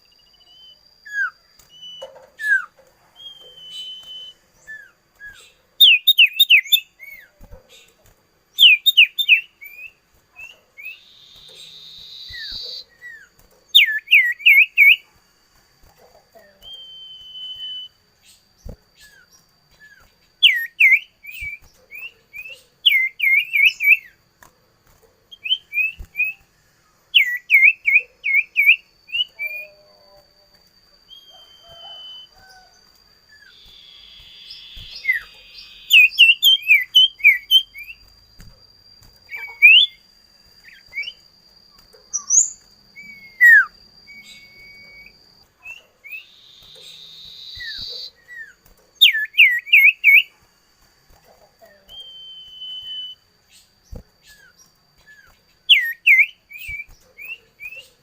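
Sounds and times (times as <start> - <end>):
songbird chirping: 0.0 - 58.0.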